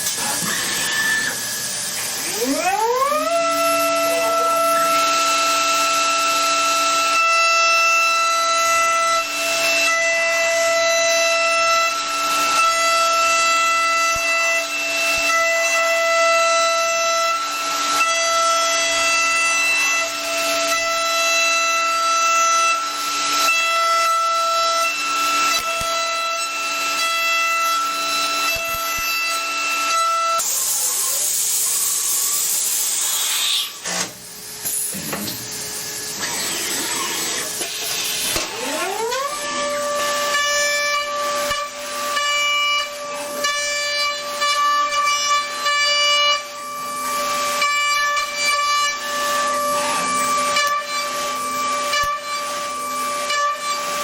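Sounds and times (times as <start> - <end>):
cnc spindle whine: 0.0 - 54.0
irregular machining noise: 0.0 - 54.0
hiss: 30.4 - 33.8.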